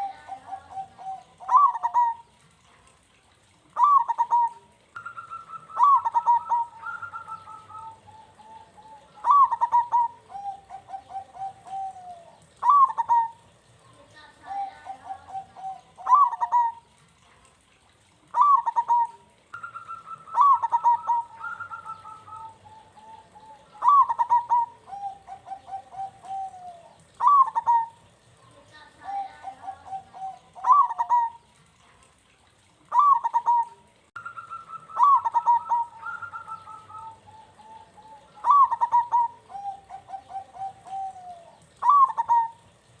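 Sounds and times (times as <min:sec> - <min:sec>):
dove cooing: 0:00.0 - 0:42.9.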